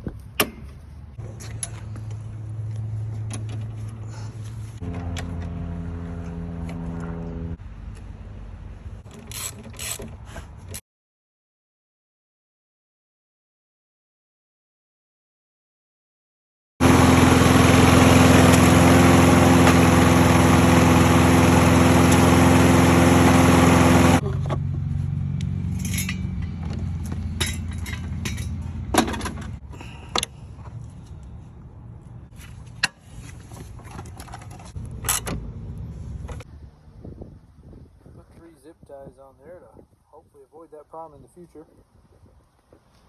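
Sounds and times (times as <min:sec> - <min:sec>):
low engine rumble: 0:00.0 - 0:09.2, 0:19.7 - 0:41.9
lawn mower engine running: 0:04.8 - 0:09.4, 0:16.8 - 0:30.1.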